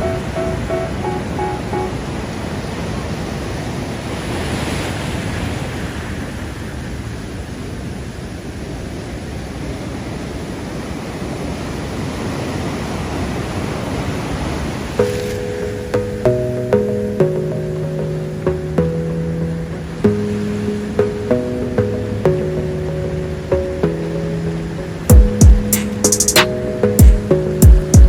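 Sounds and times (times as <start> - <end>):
breaking waves: 0.0 - 15.9.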